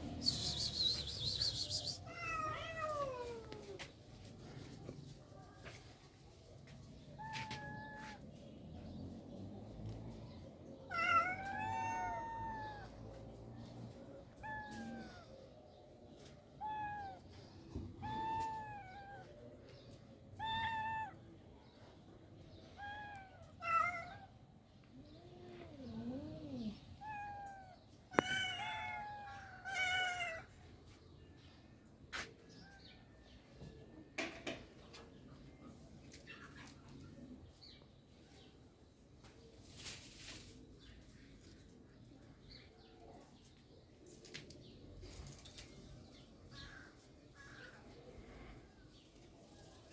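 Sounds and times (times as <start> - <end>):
cats meowing: 0.0 - 3.9, 7.2 - 8.4, 10.9 - 13.4, 14.3 - 15.5, 16.2 - 19.5, 20.4 - 21.2, 22.7 - 30.6.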